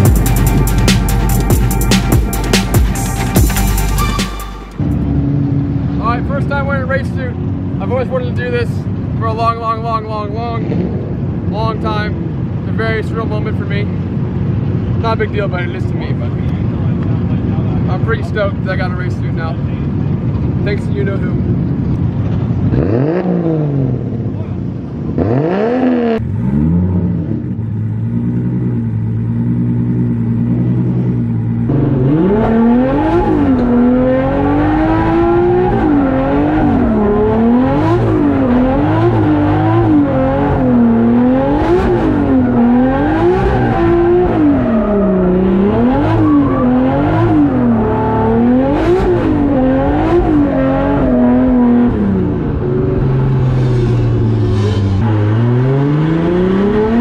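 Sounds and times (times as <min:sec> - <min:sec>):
car engine revving: 0:00.0 - 0:57.0.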